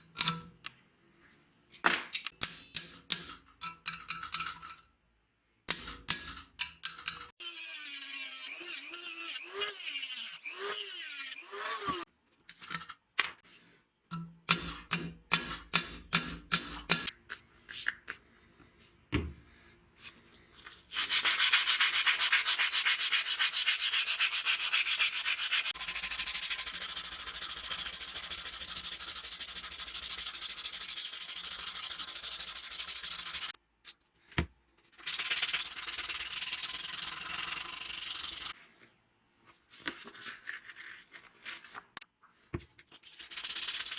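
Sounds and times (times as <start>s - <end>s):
sanding hiss: 21.0s - 33.5s, 35.0s - 38.5s.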